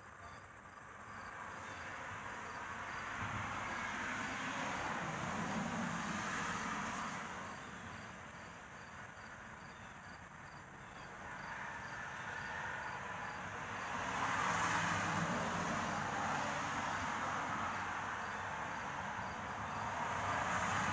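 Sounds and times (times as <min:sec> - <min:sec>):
insect chirping: 0:07.5 - 0:13.5.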